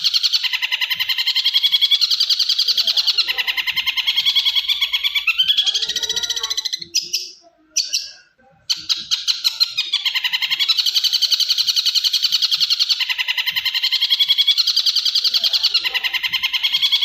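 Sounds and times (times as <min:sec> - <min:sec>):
bird chattering song: 0:00.0 - 0:17.0.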